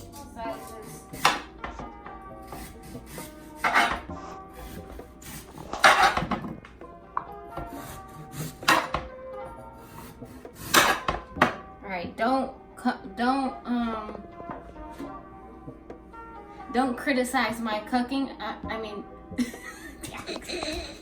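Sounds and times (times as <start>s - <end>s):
vegetable peeler scraping: 0.0s - 1.5s, 2.4s - 6.4s, 7.7s - 9.0s
background music: 0.0s - 21.0s.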